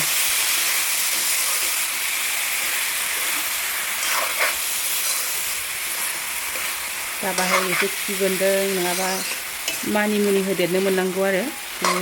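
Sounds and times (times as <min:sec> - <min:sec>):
food sizzling in a pan: 0:00.0 - 0:12.0
faint scrapes in pan: 0:03.1 - 0:08.0.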